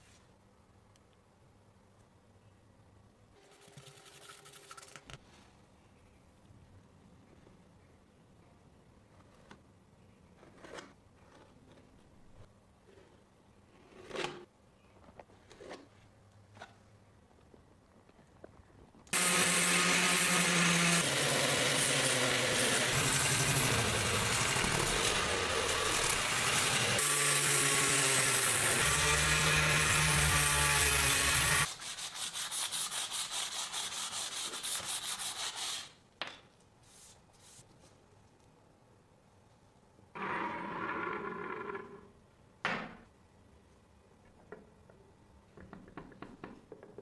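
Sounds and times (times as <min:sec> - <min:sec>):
power tool grinding metal: 0:19.2 - 0:31.7.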